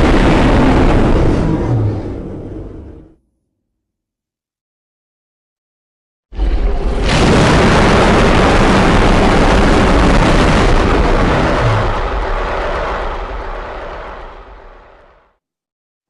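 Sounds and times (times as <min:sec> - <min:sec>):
monster roar: 0:00.0 - 0:03.1, 0:07.1 - 0:13.2.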